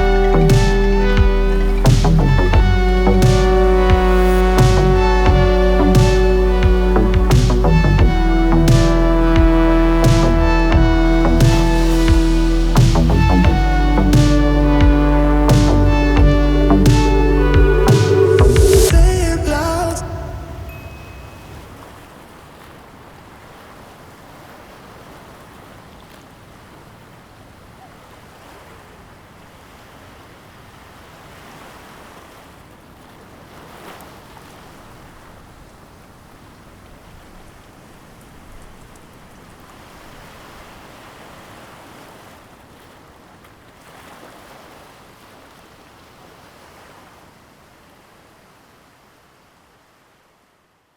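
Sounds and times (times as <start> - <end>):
waves washing onto beach: 18.7 - 50.4.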